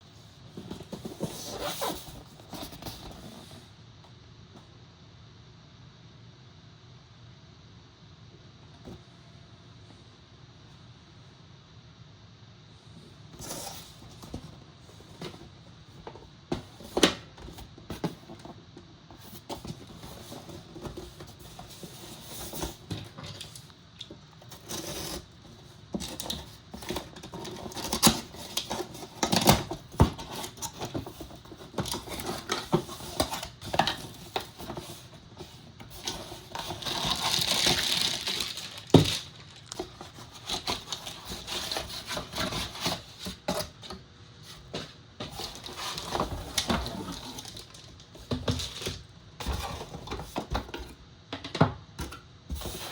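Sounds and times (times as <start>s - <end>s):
packaging rustling: 26.0s - 43.8s, 44.7s - 50.3s.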